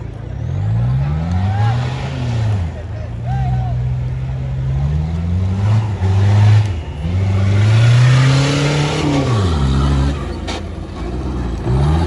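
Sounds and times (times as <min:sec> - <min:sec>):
engine revving: 0:03.9 - 0:12.0.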